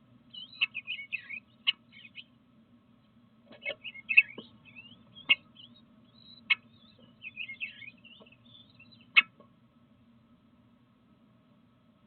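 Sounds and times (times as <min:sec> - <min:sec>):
low steady hum: 0:00.0 - 0:12.0
birds chirping: 0:00.2 - 0:09.5.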